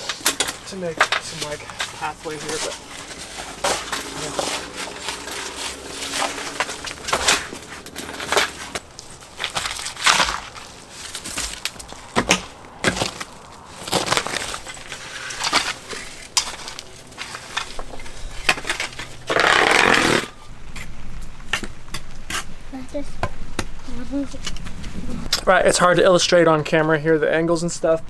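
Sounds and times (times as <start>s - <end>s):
crunching on stony ground: 0.0s - 26.0s.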